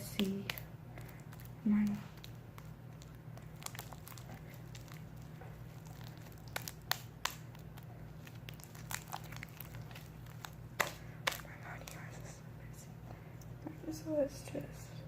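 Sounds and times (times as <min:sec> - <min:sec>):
slime wet clicks and crackles: 0:00.0 - 0:12.0.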